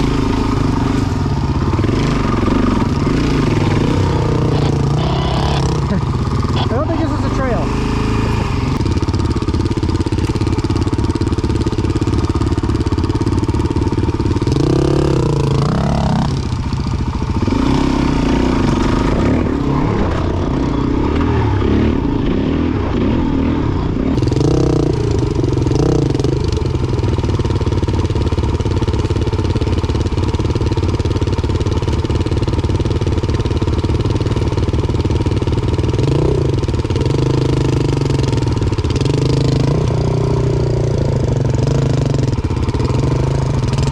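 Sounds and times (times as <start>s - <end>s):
dirt bike engine revving: 0.0s - 34.0s, 35.3s - 43.9s.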